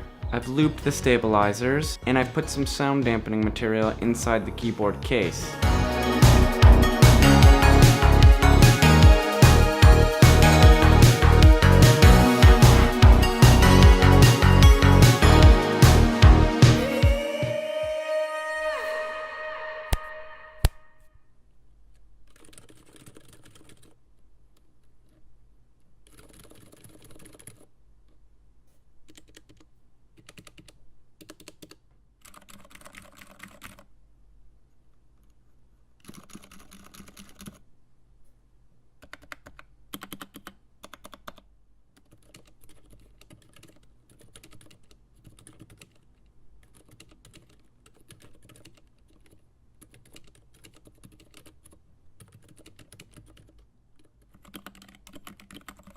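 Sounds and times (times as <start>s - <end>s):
muted keyboard keystrokes: 22.3s - 24.0s, 26.1s - 27.7s, 29.1s - 33.9s, 36.0s - 37.6s, 39.0s - 41.4s, 42.0s - 46.0s, 46.6s - 55.9s.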